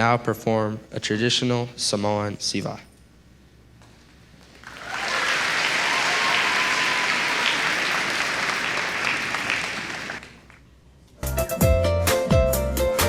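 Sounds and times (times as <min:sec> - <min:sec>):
audience applauding: 0:04.6 - 0:10.6.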